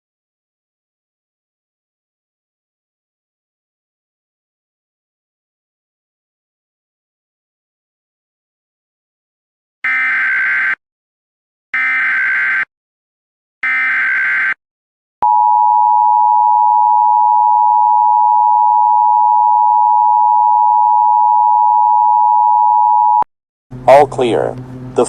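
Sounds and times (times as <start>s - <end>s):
steady attention tone: 15.2s - 25.0s.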